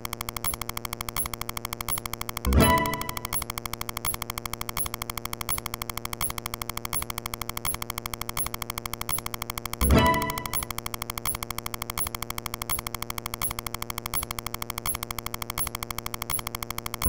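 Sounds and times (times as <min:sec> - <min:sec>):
fast electronic pulsing: 0:00.1 - 0:17.0.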